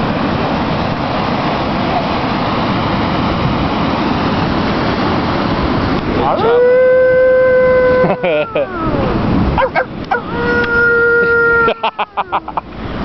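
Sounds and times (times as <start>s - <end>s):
sea surf: 0.0s - 13.0s
wind rushing: 8.6s - 11.0s.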